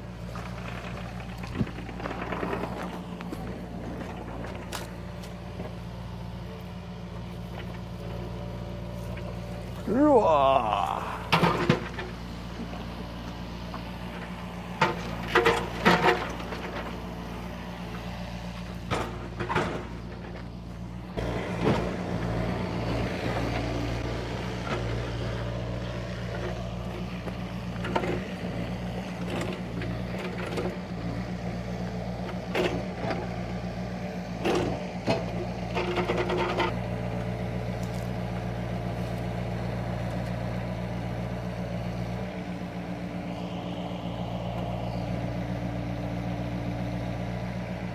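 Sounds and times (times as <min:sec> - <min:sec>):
excavator diesel engine running: 0:00.0 - 0:47.9
sharp knocks and clanks: 0:18.8 - 0:20.5.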